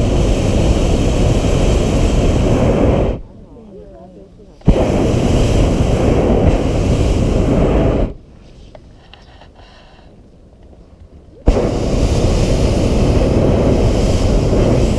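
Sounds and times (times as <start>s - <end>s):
propane burner roaring: 0.0s - 3.2s, 4.6s - 8.2s, 11.4s - 14.9s.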